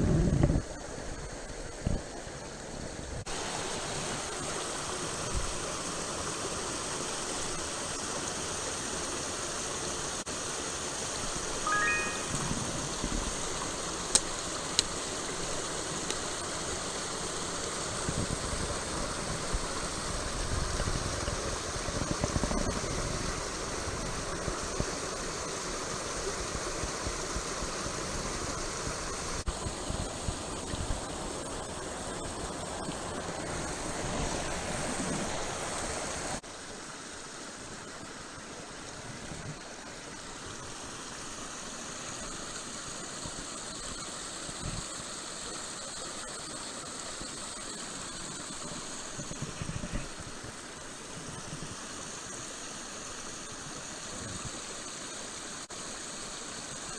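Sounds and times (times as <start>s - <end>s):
stream flowing and splashing: 1.0s - 43.7s.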